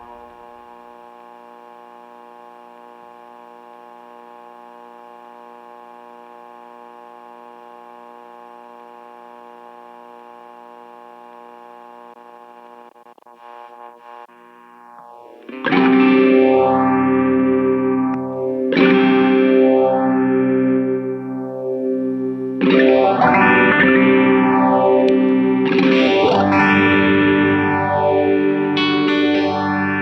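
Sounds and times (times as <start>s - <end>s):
electric guitar amp buzz: 0.0s - 30.0s.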